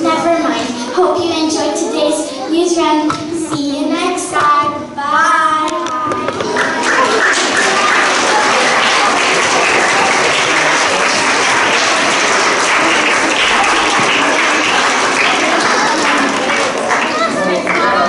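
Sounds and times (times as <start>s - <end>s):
children applauding: 6.4s - 18.0s.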